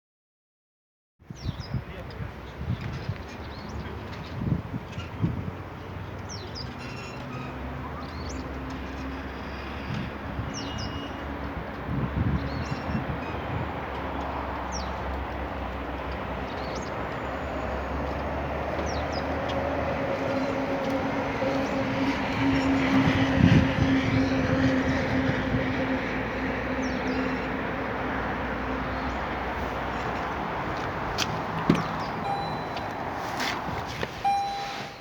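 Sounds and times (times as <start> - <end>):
vehicle rumble with humming tone: 29.6 - 35.0.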